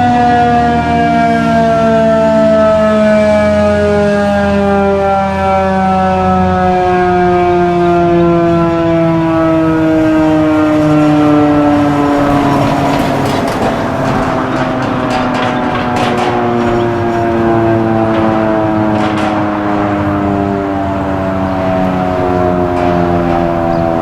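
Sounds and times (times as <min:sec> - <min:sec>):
rotating siren winding down: 0:00.0 - 0:24.0
passing vehicle: 0:09.4 - 0:24.0.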